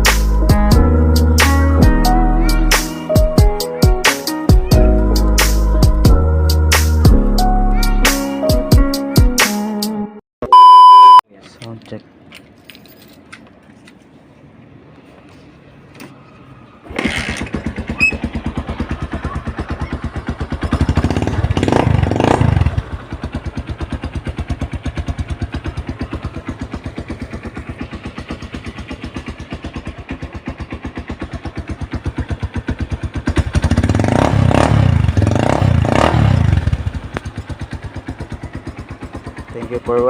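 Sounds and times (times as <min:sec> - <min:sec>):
motorcycle engine revving and idling: 0:16.9 - 0:40.0.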